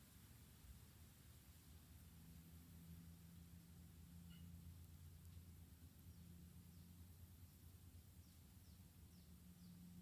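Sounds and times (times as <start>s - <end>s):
low hum: 0.6s - 10.0s
faint bird chirps: 3.5s - 10.0s.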